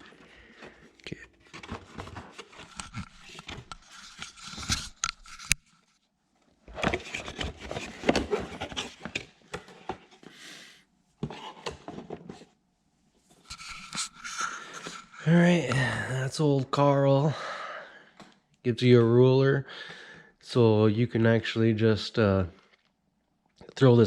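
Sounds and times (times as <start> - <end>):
cardboard packaging being opened: 1.4 - 5.6, 6.7 - 9.4.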